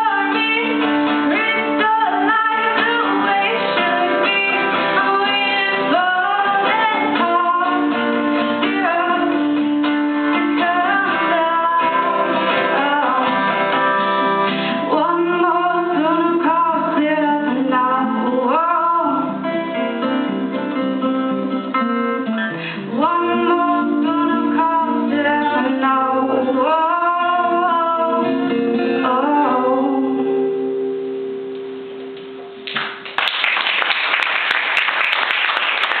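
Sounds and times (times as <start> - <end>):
woman singing: 0.0 - 14.0, 14.7 - 20.1, 22.7 - 31.0
acoustic guitar: 0.0 - 33.4
hand clapping: 32.2 - 36.0.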